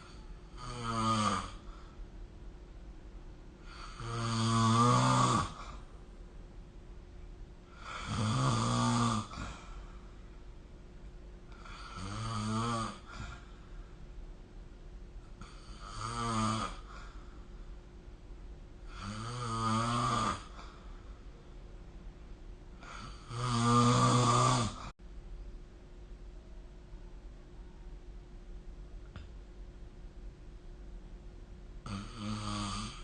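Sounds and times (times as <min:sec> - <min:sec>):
person snoring: 0:00.0 - 0:01.9, 0:03.6 - 0:05.8, 0:07.7 - 0:09.9, 0:11.5 - 0:13.5, 0:15.4 - 0:17.2, 0:18.8 - 0:20.9, 0:22.8 - 0:24.9, 0:31.8 - 0:33.0.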